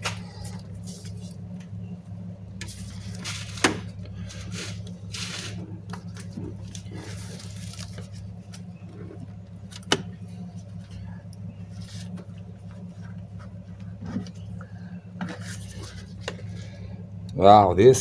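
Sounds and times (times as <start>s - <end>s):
hands rubbing and scraping hoses: 0.0s - 1.6s, 2.6s - 9.8s, 10.5s - 14.6s, 15.2s - 16.6s
engine humming: 0.0s - 18.0s.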